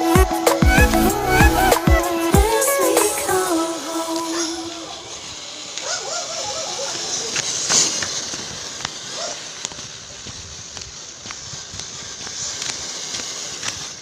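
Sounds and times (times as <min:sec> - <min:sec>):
song held note: 0:00.0 - 0:04.6
steady hiss: 0:00.0 - 0:14.0.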